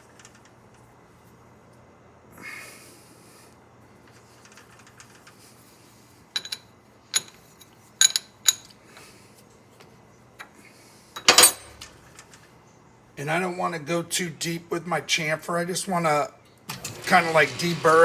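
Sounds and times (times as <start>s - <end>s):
metallic clinks and clicks: 6.4s - 8.8s.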